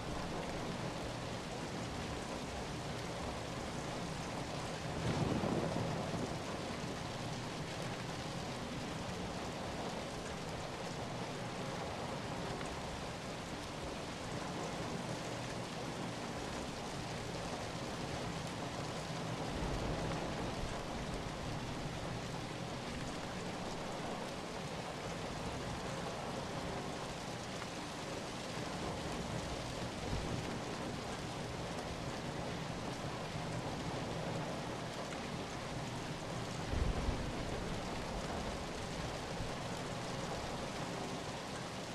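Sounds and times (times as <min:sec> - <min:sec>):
heavy rain: 0:00.0 - 0:41.9.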